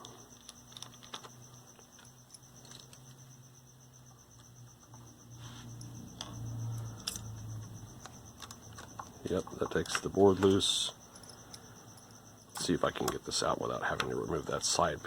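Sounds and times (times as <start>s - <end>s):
high-pitched whine: 0.0s - 15.0s
hand tools clicking and knocking: 8.0s - 11.4s, 13.8s - 14.7s.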